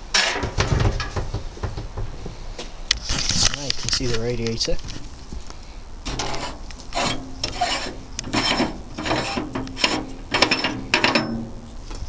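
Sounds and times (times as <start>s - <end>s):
metal rasping on metal: 6.1s - 11.6s.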